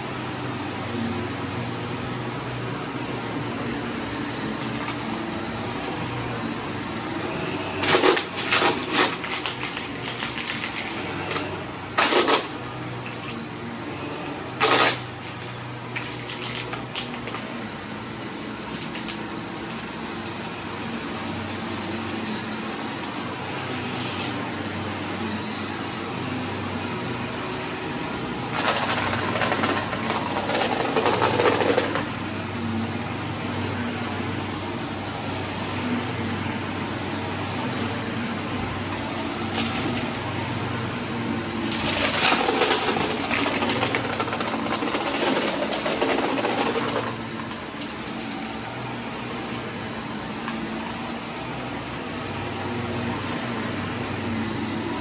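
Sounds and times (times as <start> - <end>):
vacuum cleaner running: 0.0 - 55.0
vacuum sucking up debris: 22.7 - 51.4.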